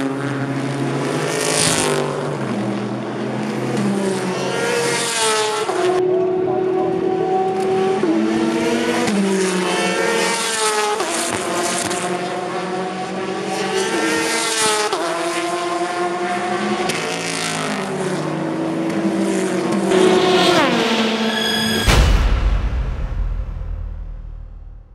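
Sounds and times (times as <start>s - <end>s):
race car engines accelerating: 0.0s - 22.0s
loud boom with deep rumble: 20.4s - 24.9s.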